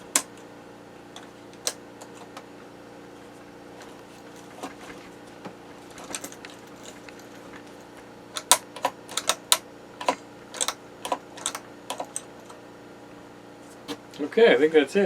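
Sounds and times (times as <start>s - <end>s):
small parts clicking and tapping: 0.0s - 0.5s, 5.7s - 12.6s.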